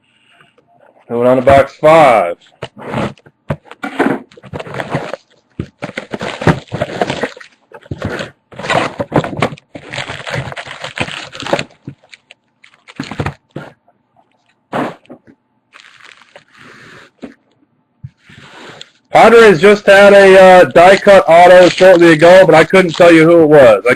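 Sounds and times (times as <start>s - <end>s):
plastic packaging crinkling and tearing: 4.3s - 13.6s, 15.7s - 16.8s, 19.6s - 23.6s.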